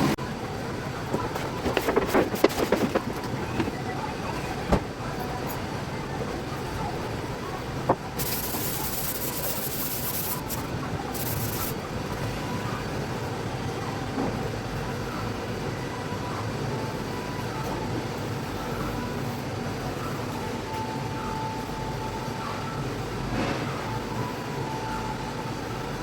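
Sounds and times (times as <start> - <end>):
steady background noise: 0.0 - 26.0
paint spray gun hissing: 8.2 - 10.6, 11.2 - 11.7.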